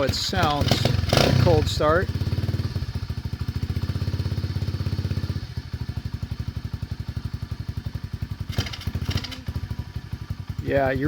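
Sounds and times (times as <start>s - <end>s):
motorbike engine idling: 0.0s - 11.0s.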